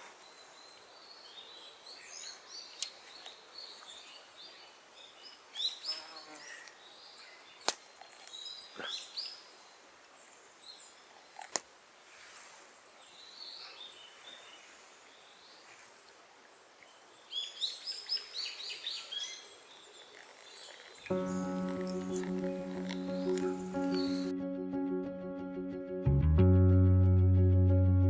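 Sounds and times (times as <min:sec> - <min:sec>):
birds chirping and calling: 0:17.3 - 0:24.3.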